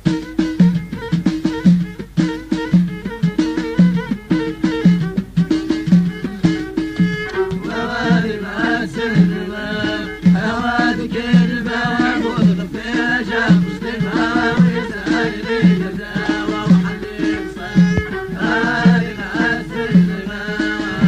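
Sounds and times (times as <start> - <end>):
folk singing voices: 6.2 - 21.0.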